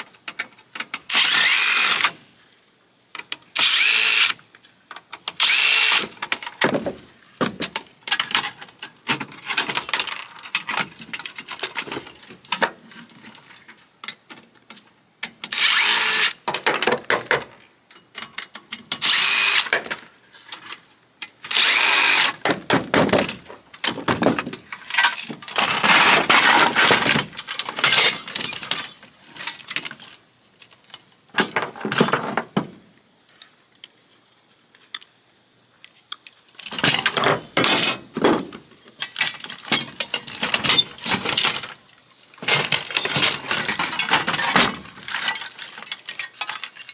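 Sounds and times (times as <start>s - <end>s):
power drill spinning in bursts: 1.1s - 2.1s, 3.6s - 4.4s, 5.4s - 6.0s, 15.5s - 16.4s, 19.0s - 19.7s, 21.5s - 22.4s
parts clicking and clattering: 18.2s - 32.7s, 35.8s - 41.8s, 42.4s - 46.9s.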